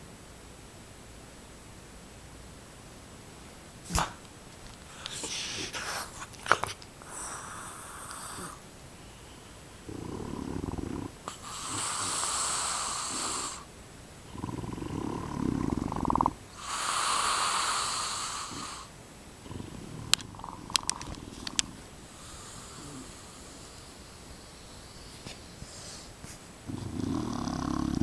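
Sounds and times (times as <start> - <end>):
dog snoring and wheezing: 7.0 - 8.6, 9.8 - 13.7, 14.3 - 23.9, 26.7 - 28.0.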